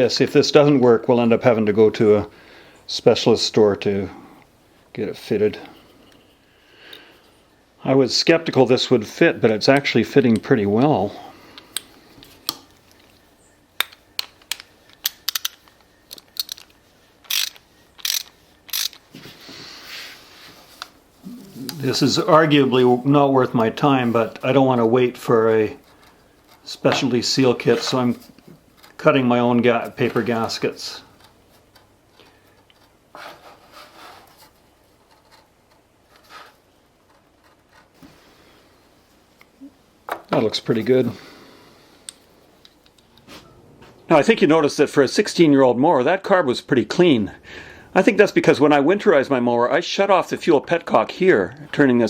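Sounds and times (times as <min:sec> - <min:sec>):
small parts and tools clicking: 0:13.8 - 0:19.2.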